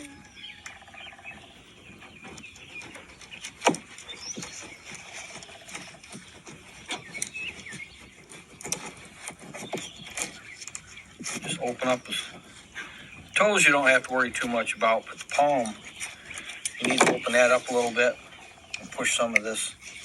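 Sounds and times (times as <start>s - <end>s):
faint bird chirps: 0.0s - 6.2s.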